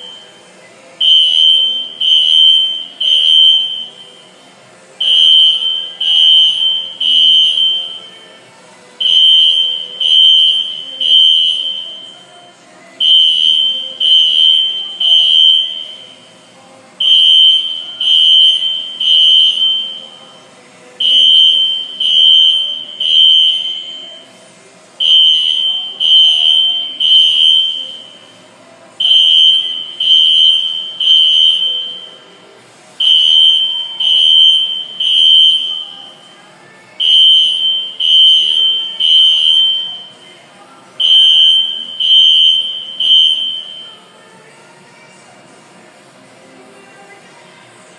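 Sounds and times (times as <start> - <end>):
fire alarm horns beeping: 0.0 - 0.4, 1.0 - 4.3, 5.0 - 8.2, 9.0 - 12.2, 13.0 - 16.3, 17.0 - 20.2, 21.0 - 24.3, 25.0 - 28.3, 29.0 - 32.4, 33.0 - 36.2, 37.0 - 40.2, 41.0 - 44.1.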